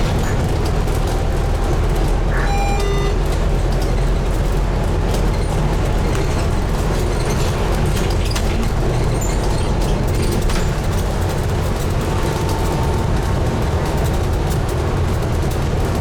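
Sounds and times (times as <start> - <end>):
bus engine drone: 0.0 - 16.0
road noise: 0.0 - 16.0
falling electronic tones: 2.3 - 3.4.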